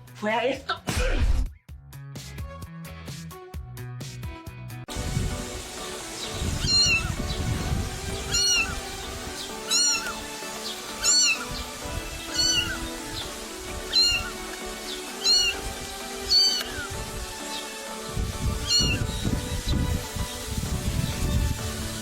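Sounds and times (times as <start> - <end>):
background music: 0.0 - 22.0
animal high-pitched call: 6.6 - 7.2, 8.3 - 8.9, 9.6 - 10.3, 10.9 - 12.9, 13.8 - 14.4, 15.0 - 17.0, 18.6 - 19.1.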